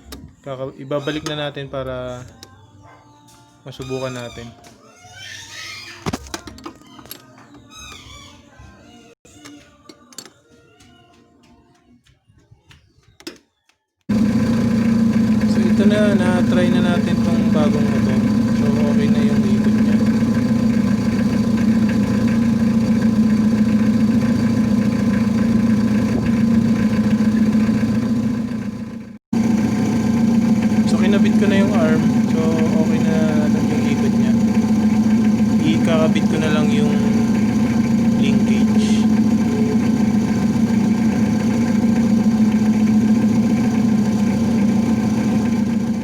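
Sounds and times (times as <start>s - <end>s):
vehicle engine idling: 14.1s - 46.0s
wiper motor humming: 14.1s - 46.0s.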